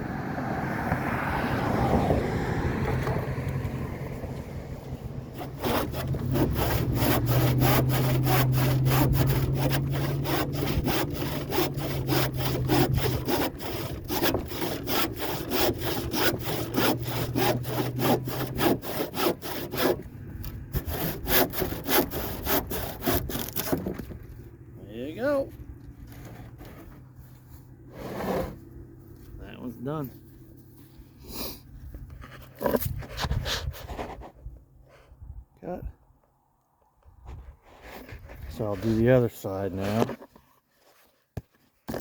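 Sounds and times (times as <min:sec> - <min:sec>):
handsaw cutting wood: 0:05.3 - 0:24.2, 0:27.9 - 0:28.6.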